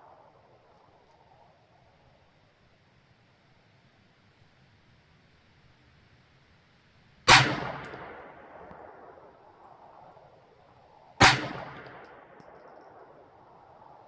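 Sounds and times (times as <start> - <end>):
pistol shots with echo: 7.3 - 10.1, 11.2 - 13.9.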